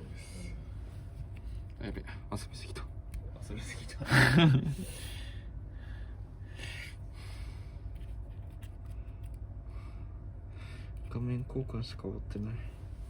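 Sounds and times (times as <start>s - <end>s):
faint rustling and scraping: 0.0s - 2.1s, 7.8s - 9.4s
low steady hum: 0.0s - 13.0s.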